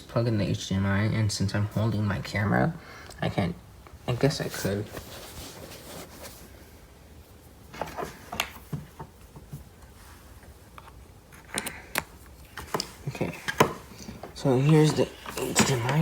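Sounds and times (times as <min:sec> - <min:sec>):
low room hum: 0:00.0 - 0:16.0
cables and plug handling clicks: 0:10.9 - 0:14.2.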